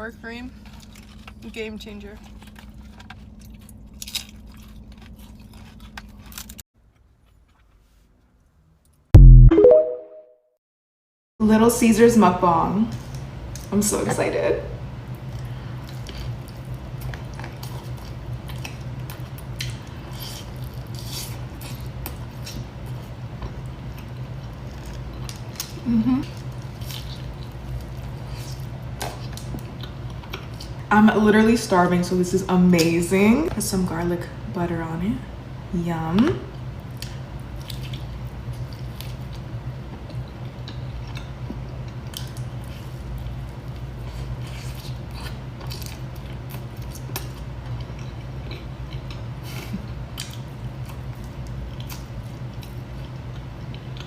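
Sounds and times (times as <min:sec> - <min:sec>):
person chewing food: 0:02.2 - 0:07.9, 0:15.1 - 0:30.8, 0:36.9 - 0:54.0.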